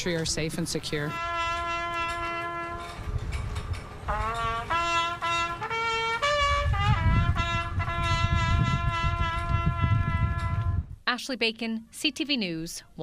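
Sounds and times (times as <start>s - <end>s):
trumpet bugle call: 1.1s - 3.1s, 4.1s - 10.8s.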